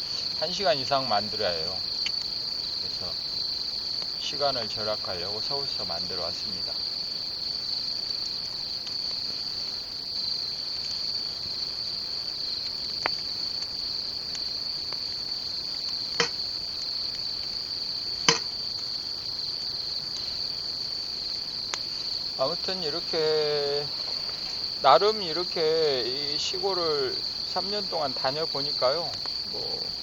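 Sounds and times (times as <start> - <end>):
crickets chirping: 0.0 - 30.0
short sharp pops: 16.2 - 16.4, 18.2 - 18.6.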